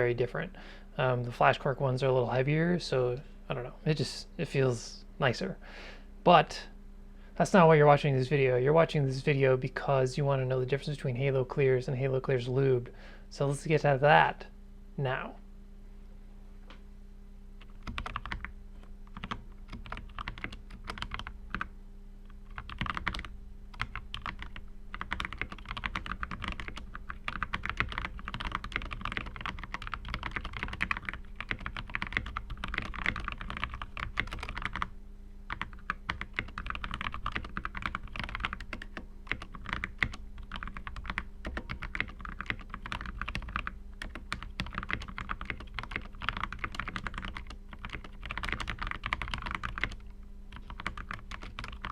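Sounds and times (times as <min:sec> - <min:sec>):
faint steady hum: 0:00.0 - 0:51.9
mechanical keyboard typing: 0:17.6 - 0:18.5, 0:19.1 - 0:21.7, 0:22.5 - 0:34.9, 0:35.5 - 0:51.9.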